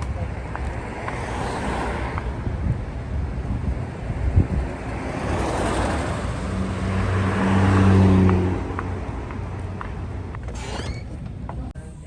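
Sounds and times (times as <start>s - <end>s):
car driving past: 5.0s - 9.0s.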